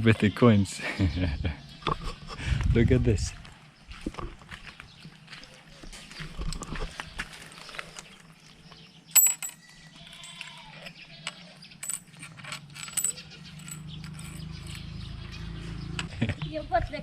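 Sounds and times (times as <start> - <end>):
metal coins clinking: 9.1 - 15.1.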